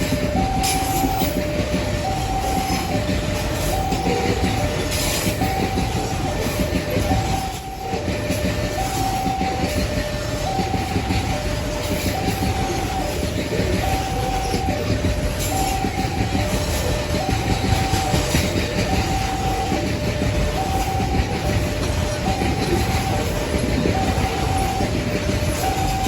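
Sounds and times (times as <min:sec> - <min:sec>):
train rumble and wheel clatter: 0:00.0 - 0:26.0
two-tone warning signal: 0:00.0 - 0:26.0.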